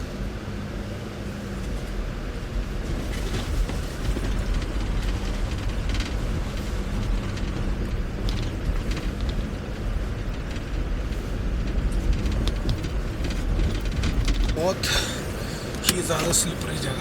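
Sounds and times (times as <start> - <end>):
diesel engine droning: 0.0 - 17.0
crackles from tyres and body: 0.9 - 17.0.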